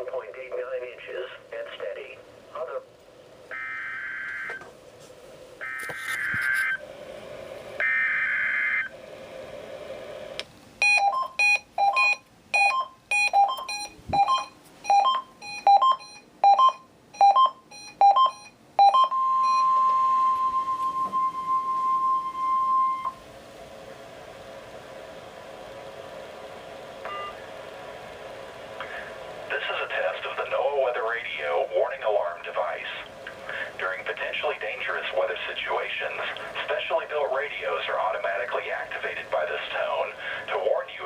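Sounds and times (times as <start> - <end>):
steady warning alarm tone: 3.5 - 4.6, 5.6 - 6.8, 7.8 - 8.9, 10.8 - 23.3, 27.0 - 27.4
screechy digital data bursts: 5.6 - 6.8
short two-pitch beeps: 10.8 - 23.2.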